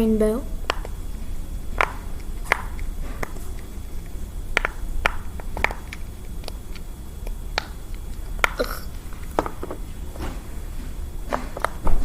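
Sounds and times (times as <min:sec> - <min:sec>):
fidget toy bubbles popping: 0:00.6 - 0:01.0, 0:01.8 - 0:03.3, 0:04.5 - 0:06.8.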